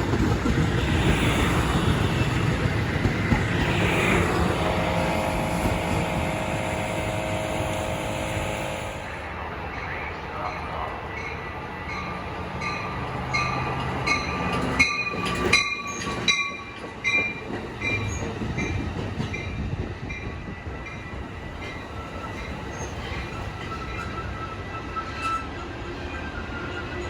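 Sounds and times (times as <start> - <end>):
wheels clattering over rail joints: 0.0 - 8.8, 9.7 - 20.4
train rumbling past: 0.0 - 27.0.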